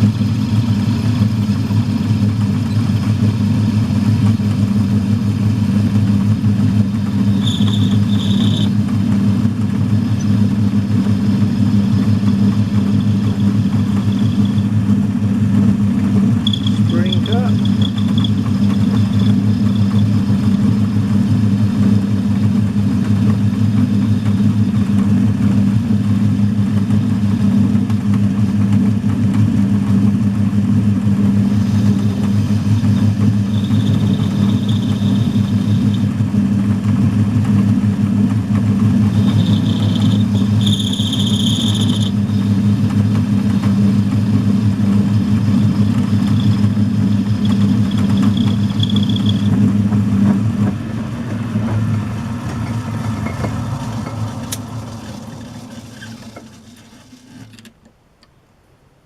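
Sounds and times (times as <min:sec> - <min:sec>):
lathe humming: 0:00.0 - 0:25.0, 0:31.1 - 0:57.5
faint high-pitched cutting: 0:07.1 - 0:08.8, 0:16.4 - 0:20.8, 0:31.5 - 0:36.1, 0:38.9 - 0:42.6, 0:45.5 - 0:49.7.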